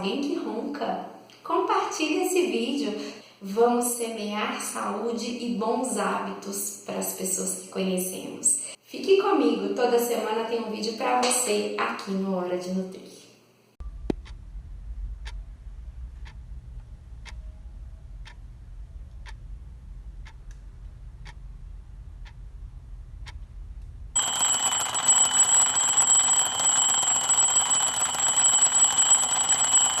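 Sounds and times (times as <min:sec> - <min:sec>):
low hum: 0:13.8 - 0:30.0
clock ticking: 0:14.1 - 0:14.4, 0:15.2 - 0:15.4, 0:16.2 - 0:16.4, 0:17.2 - 0:17.4, 0:18.2 - 0:18.4, 0:19.1 - 0:19.5, 0:20.1 - 0:20.6, 0:21.2 - 0:21.4
alarm clock ringing: 0:24.2 - 0:30.0.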